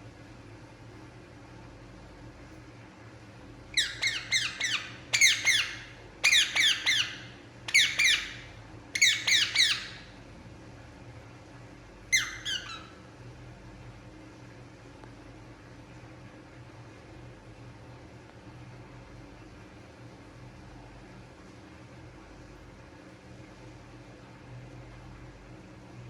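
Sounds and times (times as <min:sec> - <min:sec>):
parakeet calling: 0:03.7 - 0:10.1, 0:12.1 - 0:13.0.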